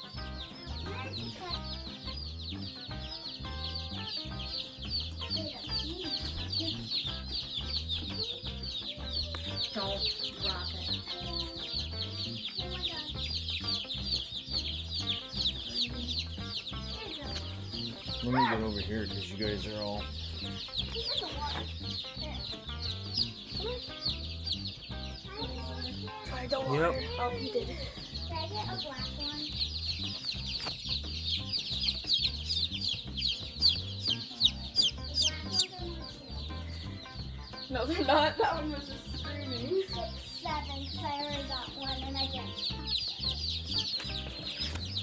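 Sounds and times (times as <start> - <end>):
background music with bass line: 0.0 - 45.0
chicks peeping: 0.0 - 45.0.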